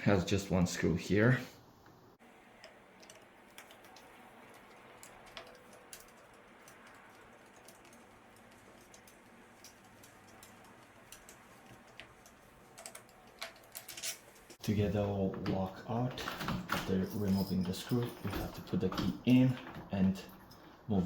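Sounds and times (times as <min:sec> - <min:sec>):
screwdriver clicks and ticks: 0:02.6 - 0:14.1.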